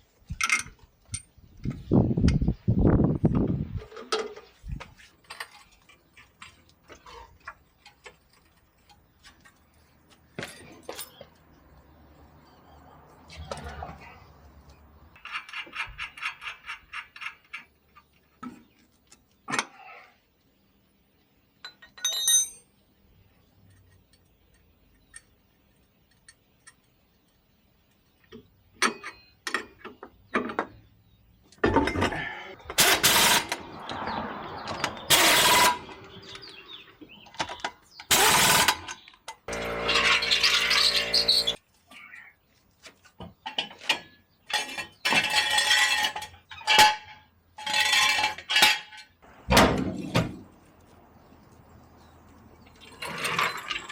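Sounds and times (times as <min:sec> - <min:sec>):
metal clinks: 0:21.6 - 0:22.7
power tool bursts: 0:32.8 - 0:33.6, 0:35.1 - 0:35.9, 0:38.1 - 0:38.9, 0:39.5 - 0:41.6.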